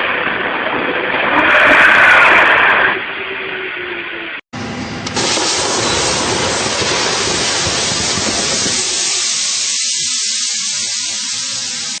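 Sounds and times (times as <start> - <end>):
gas hissing into inflating slide: 5.2 - 12.0.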